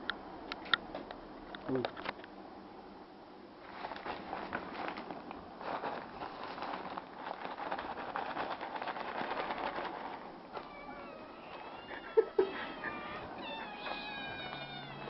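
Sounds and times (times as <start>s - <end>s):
packaging crinkling and rustling: 3.6s - 11.9s.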